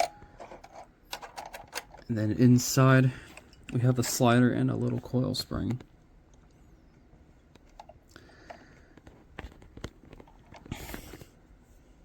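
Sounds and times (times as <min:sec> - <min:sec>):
plastic parts clicking and tapping: 0:00.0 - 0:02.1, 0:07.5 - 0:11.2.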